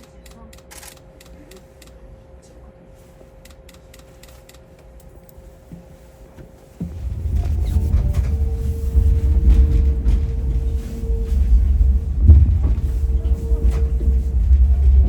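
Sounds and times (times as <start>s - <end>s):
electric train humming: 4.8s - 15.0s
train rumbling moving off: 6.5s - 15.0s.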